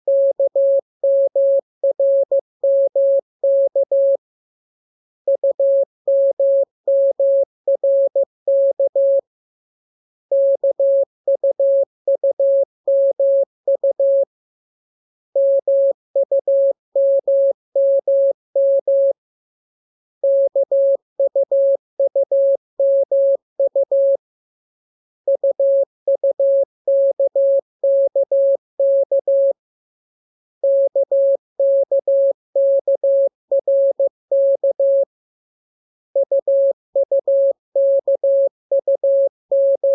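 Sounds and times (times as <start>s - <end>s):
morse code tone: 36.2s - 39.9s.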